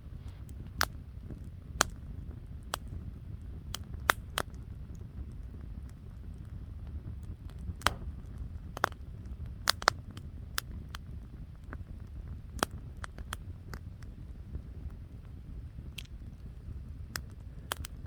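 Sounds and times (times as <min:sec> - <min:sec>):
campfire crackling and popping: 0:00.4 - 0:18.0
low rumble: 0:07.8 - 0:09.8.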